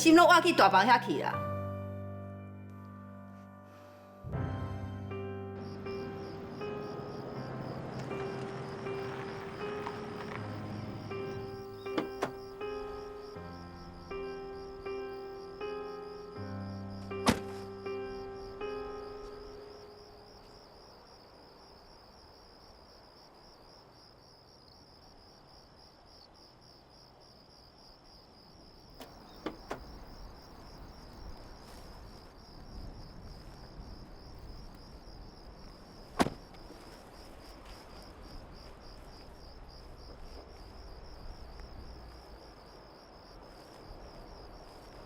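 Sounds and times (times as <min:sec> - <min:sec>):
crickets chirping: 0:00.0 - 0:45.0.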